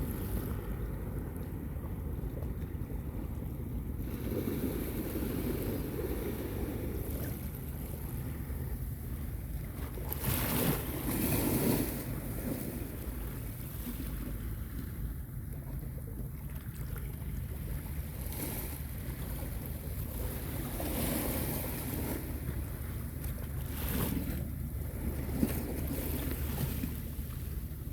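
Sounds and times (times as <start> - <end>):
wind rumbling on microphone: 0.0 - 27.9
waves washing onto beach: 4.0 - 14.4.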